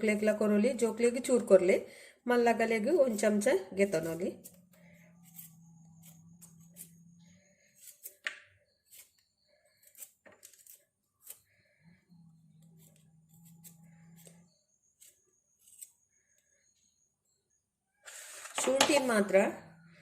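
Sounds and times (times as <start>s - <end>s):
kitchen items clicking and knocking: 18.5s - 19.3s.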